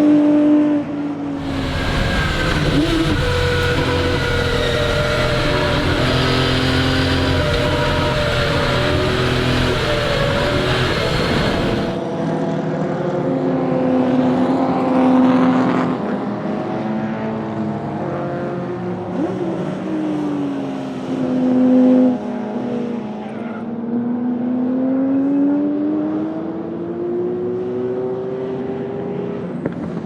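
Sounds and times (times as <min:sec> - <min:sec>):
engine revving hard: 0:01.4 - 0:12.0
loud hiss: 0:01.4 - 0:12.0.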